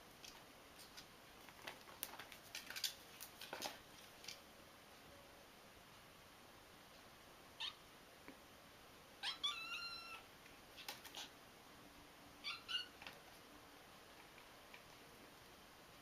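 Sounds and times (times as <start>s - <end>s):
kitten mewing: 9.2s - 11.3s.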